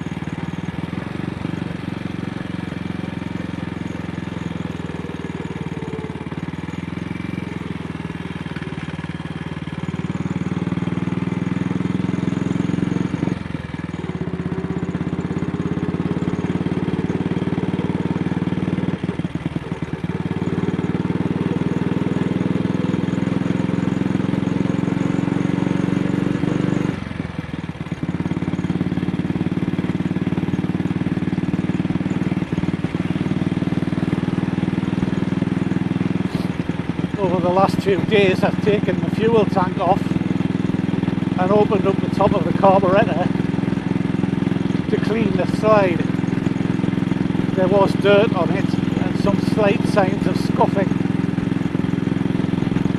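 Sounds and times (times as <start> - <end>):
motorcycle engine running: 0.0 - 52.9.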